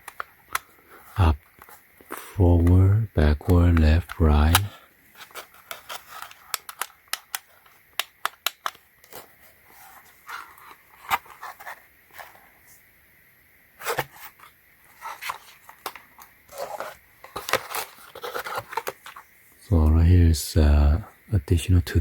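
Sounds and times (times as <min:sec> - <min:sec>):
plastic parts clicking: 0:00.0 - 0:00.7, 0:04.1 - 0:09.3, 0:15.2 - 0:19.2
packaging rustling: 0:04.0 - 0:12.5, 0:13.8 - 0:19.2.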